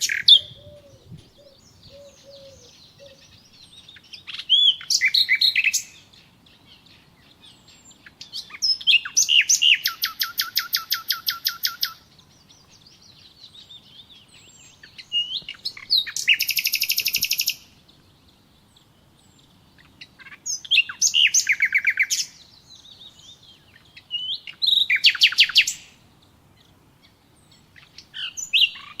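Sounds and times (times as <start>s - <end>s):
songbird trilling: 0.0s - 6.1s, 6.8s - 17.8s.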